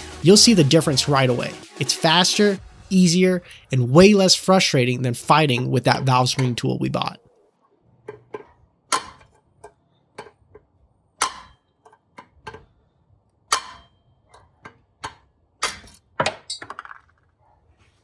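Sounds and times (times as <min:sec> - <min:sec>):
hammer striking metal socket: 0:05.3 - 0:06.8, 0:08.1 - 0:12.8, 0:13.5 - 0:16.7
light metal taps and clicks: 0:05.3 - 0:07.1, 0:08.0 - 0:12.9, 0:13.5 - 0:16.8.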